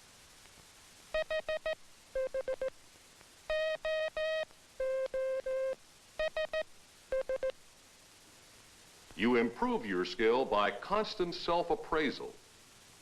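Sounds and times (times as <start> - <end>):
morse code tones: 3.5 - 7.5.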